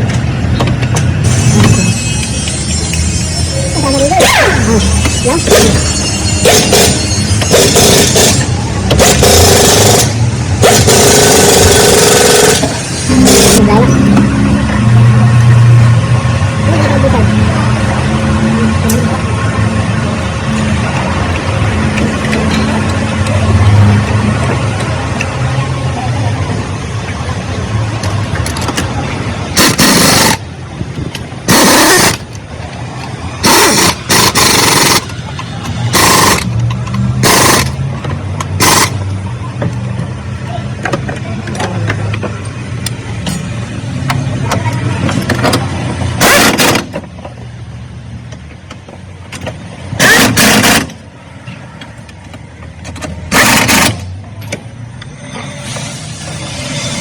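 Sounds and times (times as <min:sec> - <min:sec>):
loud short noise bursts: 0:04.2 - 0:14.0, 0:33.4 - 0:35.1, 0:50.0 - 0:51.0.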